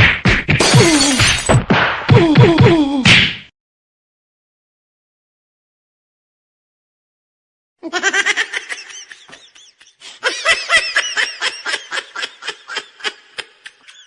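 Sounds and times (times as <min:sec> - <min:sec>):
high-pitched laughter: 0:07.8 - 0:14.0.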